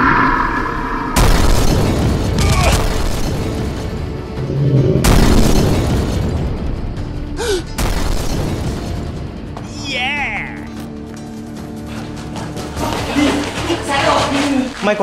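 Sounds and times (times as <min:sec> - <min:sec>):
explosion booms: 0:00.0 - 0:03.5
background music: 0:00.0 - 0:15.0.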